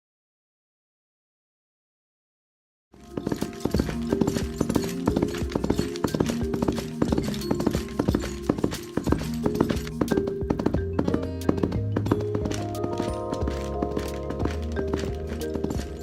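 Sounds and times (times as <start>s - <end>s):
clip-clop of hooves: 3.0s - 16.0s
music with steady pitched notes: 3.0s - 16.0s.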